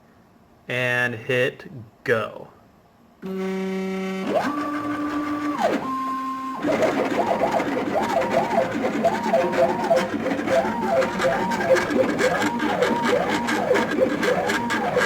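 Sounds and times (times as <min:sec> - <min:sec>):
stepper motors whining: 0:03.2 - 0:15.0.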